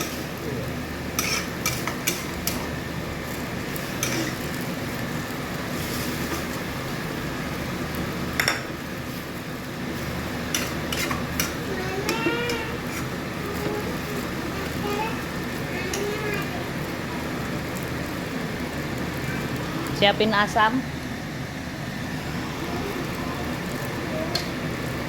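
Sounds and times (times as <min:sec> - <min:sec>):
tofu sizzling: 0:00.0 - 0:20.0, 0:20.8 - 0:25.0
metal spatula scraping a wok: 0:01.1 - 0:02.7, 0:03.9 - 0:04.4, 0:10.5 - 0:13.2.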